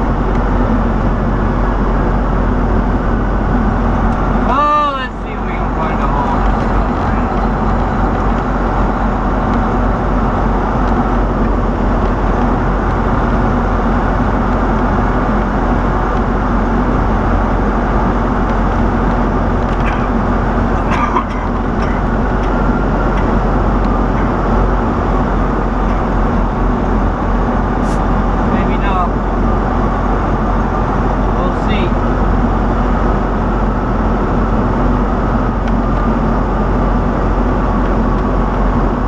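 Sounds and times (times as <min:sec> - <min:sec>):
truck diesel engine drone: 0:00.0 - 0:39.0.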